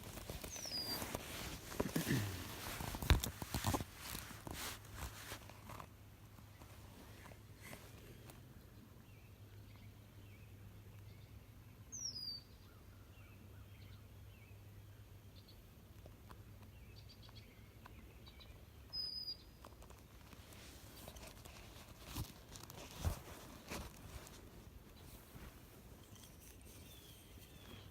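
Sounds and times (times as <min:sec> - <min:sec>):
faint bird chirps: 0:00.4 - 0:01.2, 0:08.6 - 0:15.6, 0:16.7 - 0:19.6, 0:26.0 - 0:27.9.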